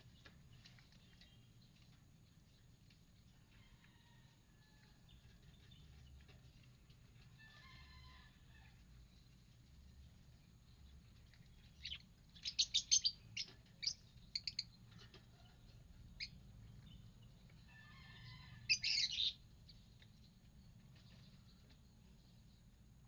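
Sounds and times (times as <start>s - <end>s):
lovebirds chirping: 10.4s - 14.8s, 16.1s - 22.7s.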